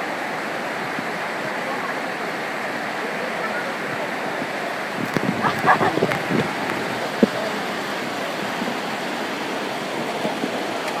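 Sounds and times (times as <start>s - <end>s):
stream rushing: 0.0s - 11.0s
faint voices: 1.4s - 8.8s.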